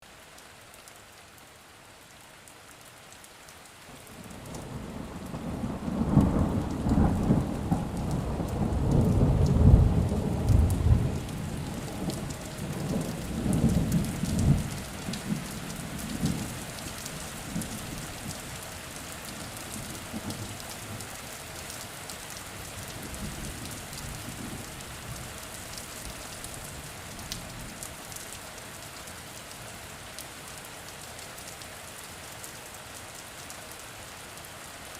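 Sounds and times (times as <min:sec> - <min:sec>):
steady rain: 0:00.0 - 0:34.9
thunder rolling: 0:04.8 - 0:14.7.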